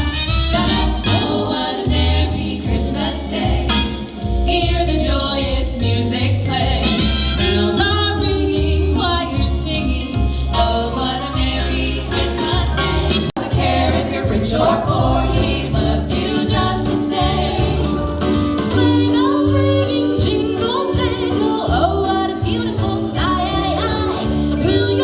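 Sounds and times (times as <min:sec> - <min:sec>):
backing track with jingle bells: 0:00.1 - 0:25.0
vocal trio singing in harmony: 0:00.6 - 0:25.0.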